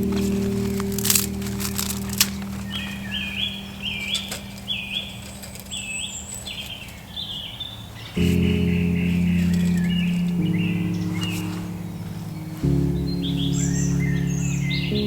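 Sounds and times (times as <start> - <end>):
background music: 0.0 - 4.8, 8.2 - 15.0.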